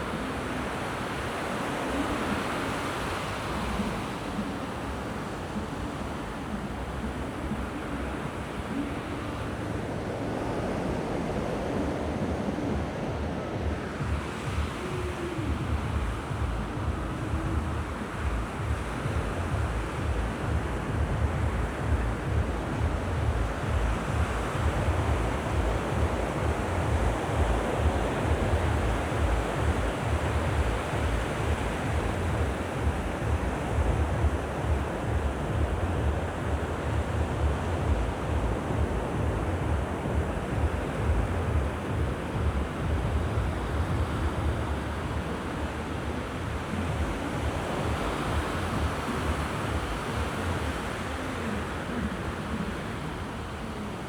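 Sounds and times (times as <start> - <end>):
sea waves washing onto beach: 0.0 - 54.0
wind buffeting microphone: 0.0 - 54.0.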